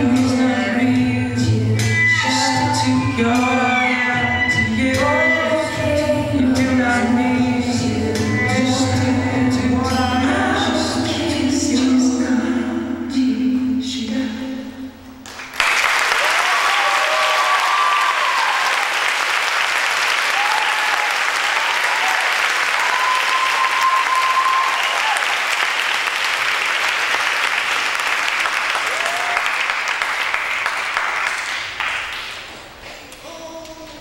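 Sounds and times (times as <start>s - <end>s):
audience applauding: 15.2s - 33.2s.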